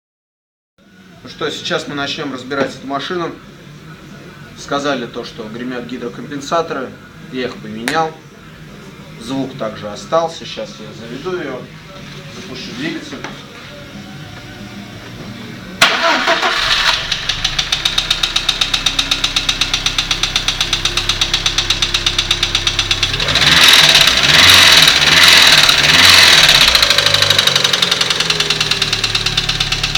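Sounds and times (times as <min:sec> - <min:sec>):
car engine starting: 0:15.8 - 0:29.9
engine revving: 0:15.8 - 0:29.9
knocking engine idle: 0:17.0 - 0:29.9.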